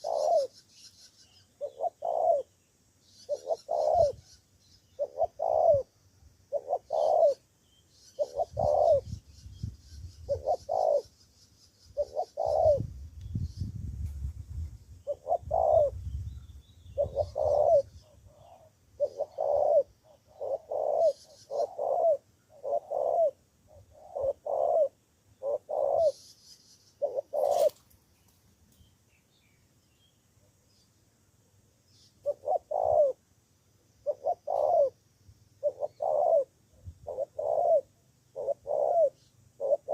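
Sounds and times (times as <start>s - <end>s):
dove cooing in low hoots: 0.0s - 0.6s, 1.3s - 2.6s, 3.2s - 7.5s, 8.1s - 9.3s, 10.2s - 11.2s, 11.9s - 13.0s, 15.0s - 26.3s, 27.0s - 27.8s, 32.2s - 33.2s, 34.0s - 35.0s, 35.6s - 39.9s
small birds chirping: 0.0s - 33.2s, 33.8s - 39.9s.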